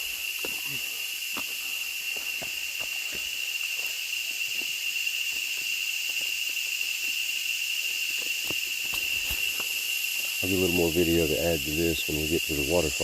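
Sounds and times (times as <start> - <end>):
footsteps on dirt trail: 0.0 - 7.2, 8.0 - 10.4
jungle insects droning: 0.0 - 13.0.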